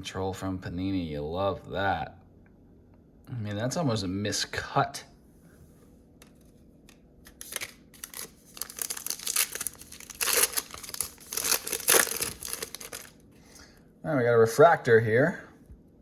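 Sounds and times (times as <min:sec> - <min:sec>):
card pack wrapper crinkling: 0:07.2 - 0:13.2
wrapper tearing: 0:07.2 - 0:13.2.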